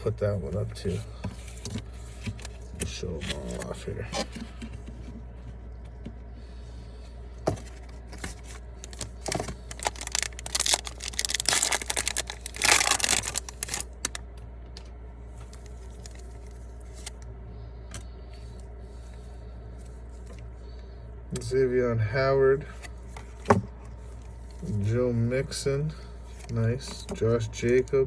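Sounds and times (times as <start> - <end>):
steady low hum: 0.0 - 28.0
wrapper tearing and crinkling: 8.4 - 14.2.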